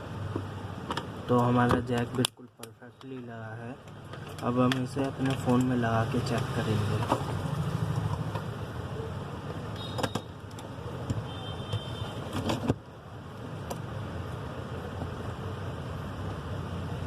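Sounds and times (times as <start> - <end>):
phone parts clicking and tapping: 0.4 - 7.4.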